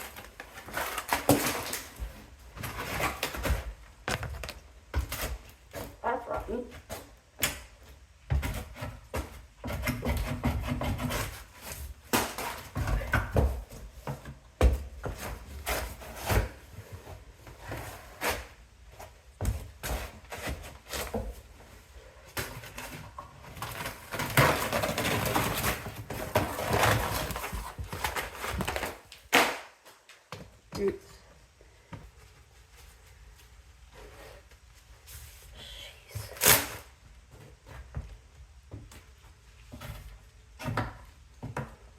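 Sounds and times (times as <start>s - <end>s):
wood scraping and crunching: 22.4s - 29.3s.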